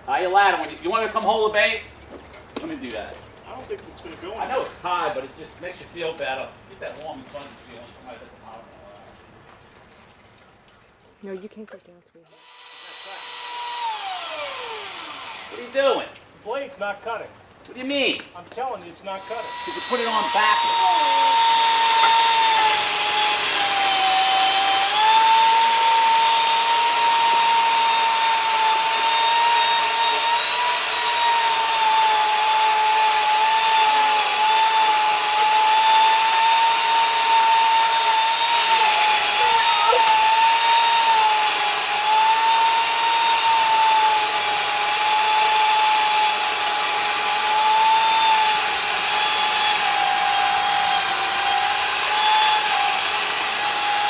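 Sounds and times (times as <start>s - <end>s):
power saw cutting wood: 12.3s - 16.2s, 19.1s - 54.0s.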